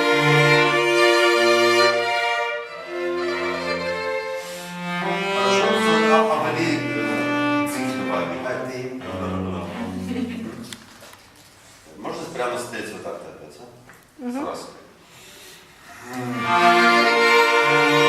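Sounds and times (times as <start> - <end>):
bowed strings playing held notes: 0.0 - 10.6.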